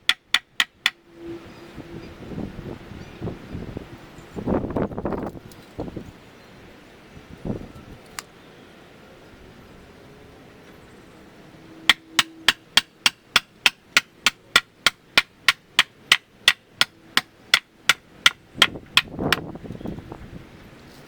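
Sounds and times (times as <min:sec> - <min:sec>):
hammering: 0:00.0 - 0:01.0, 0:11.9 - 0:19.4.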